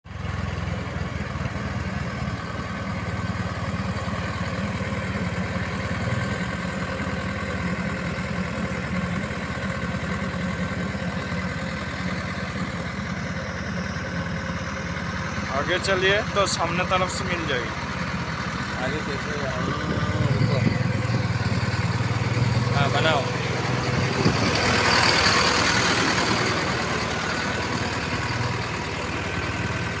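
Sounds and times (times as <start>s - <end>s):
diesel engine idling: 0.1s - 30.0s.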